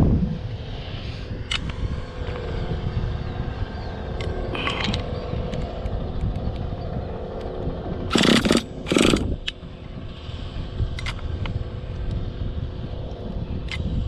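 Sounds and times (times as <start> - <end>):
small nitro engine revving: 8.1 - 9.4.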